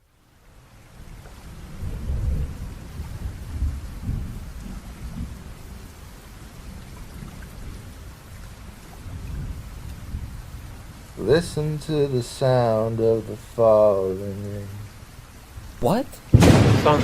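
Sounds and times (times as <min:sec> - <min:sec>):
steady rain: 0:00.0 - 0:17.0
thunder rumbling: 0:01.6 - 0:07.9, 0:16.2 - 0:17.0.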